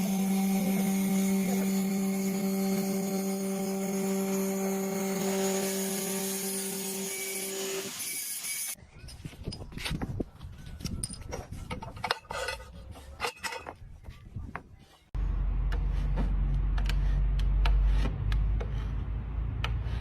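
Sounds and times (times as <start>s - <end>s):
hand tools scraping and clicking: 7.8s - 15.1s, 15.7s - 19.0s.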